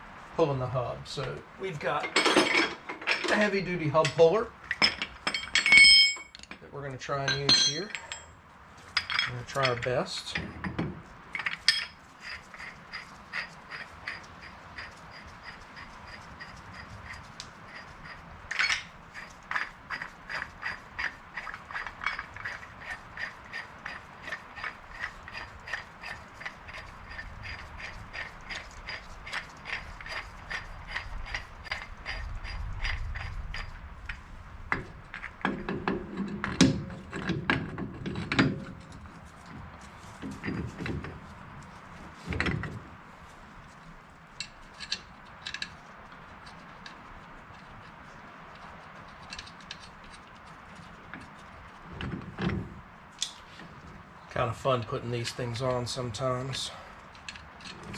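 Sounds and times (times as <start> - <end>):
metallic clatter: 1.9 - 8.3, 8.9 - 42.8
metal clanks and clicks: 2.0 - 6.6.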